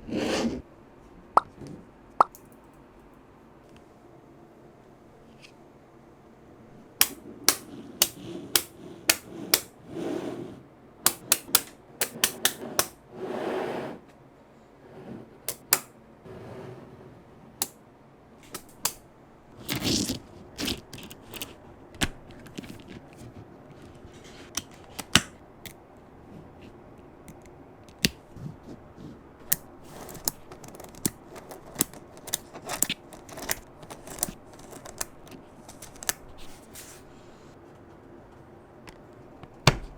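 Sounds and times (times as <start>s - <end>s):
rustling or squishing: 19.5s - 25.1s
magnetic balls clicking together: 29.4s - 36.2s.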